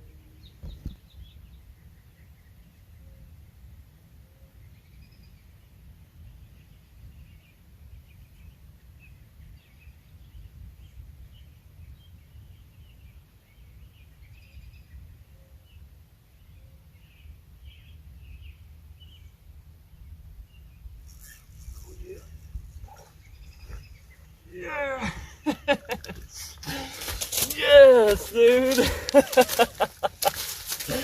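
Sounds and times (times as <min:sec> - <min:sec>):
birds chirping: 0:00.0 - 0:03.4, 0:04.2 - 0:31.0.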